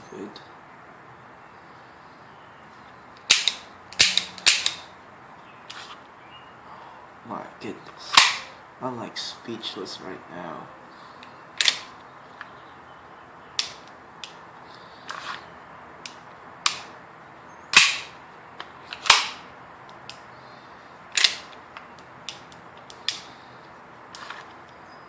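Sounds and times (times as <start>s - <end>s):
pistol slide metallic clacks: 3.2s - 4.8s, 8.1s - 8.5s, 11.2s - 11.9s, 13.6s - 14.4s, 17.7s - 19.4s, 21.1s - 23.3s, 24.1s - 24.8s.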